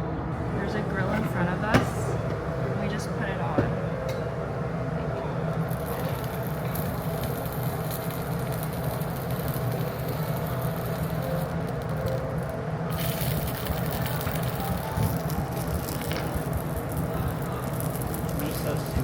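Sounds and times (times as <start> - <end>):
constant low hum: 0.0 - 19.0
meat sizzling on grill: 5.6 - 19.0.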